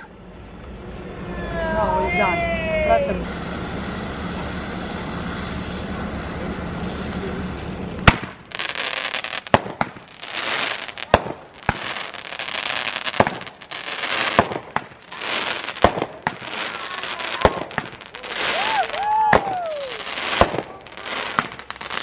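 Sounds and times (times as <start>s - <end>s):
low hum: 0.0s - 8.6s
fireworks bangs: 2.3s - 22.0s
fireworks hissing and crackling: 2.3s - 22.0s.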